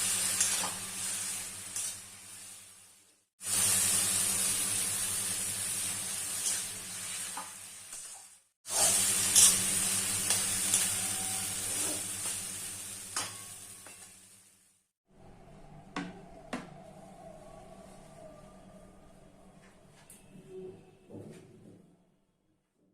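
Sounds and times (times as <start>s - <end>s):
food sizzling in hot oil: 0.0s - 14.9s.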